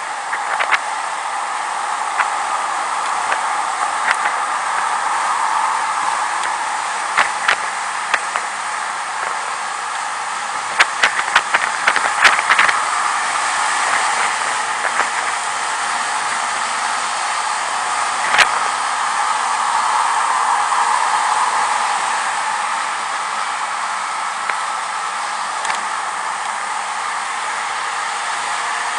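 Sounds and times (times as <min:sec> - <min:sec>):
wind rushing over microphone: 0:00.0 - 0:28.9
sharp clicks and knocks: 0:00.3 - 0:00.9, 0:03.0 - 0:04.9, 0:06.4 - 0:08.5, 0:10.6 - 0:12.8, 0:13.8 - 0:15.4.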